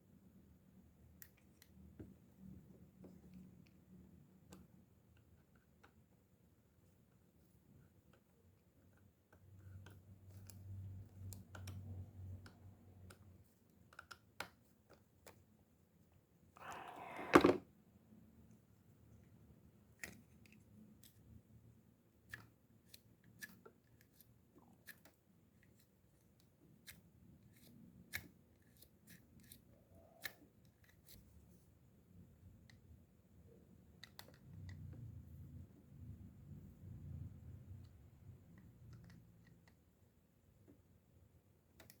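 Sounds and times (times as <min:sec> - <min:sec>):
light clicks of small parts: 0:08.9 - 0:15.4.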